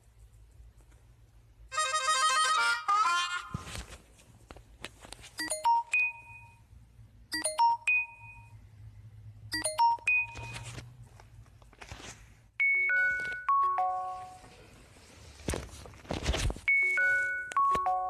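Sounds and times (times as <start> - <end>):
phone electronic chime tone: 5.4 - 6.6, 7.4 - 8.5, 9.6 - 10.7, 12.6 - 14.6, 16.7 - 18.0.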